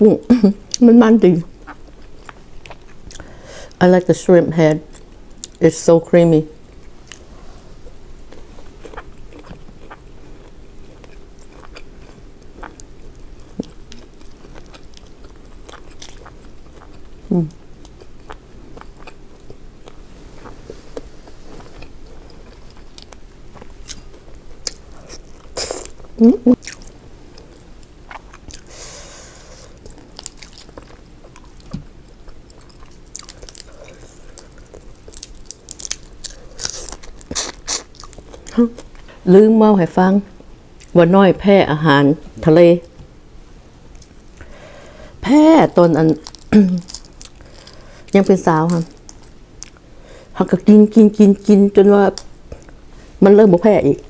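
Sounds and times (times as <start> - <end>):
chewing and crunching seafood: 1.5 - 3.4, 6.7 - 28.7, 29.7 - 39.2, 46.0 - 50.0.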